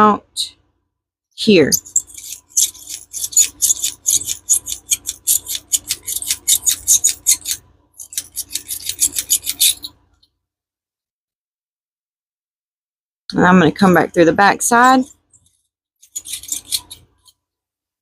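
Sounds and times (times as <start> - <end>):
hand tool rasping resin: 1.8 - 10.0, 16.0 - 17.3.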